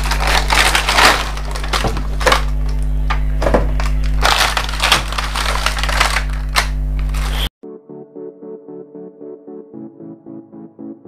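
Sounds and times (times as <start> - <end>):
low electrical hum: 0.0 - 7.5
packaging crackling and rustling: 0.0 - 7.5.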